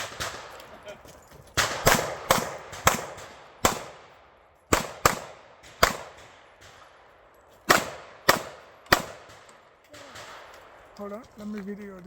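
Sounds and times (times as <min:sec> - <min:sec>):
handgun shots echoing: 0:01.6 - 0:06.9, 0:07.6 - 0:10.8.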